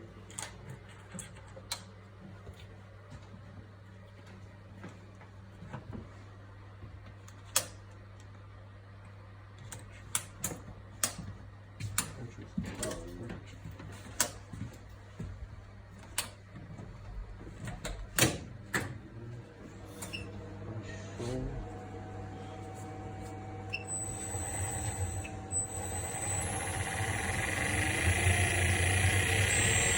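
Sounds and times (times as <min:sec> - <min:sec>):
steady low hum: 0:19.4 - 0:29.9.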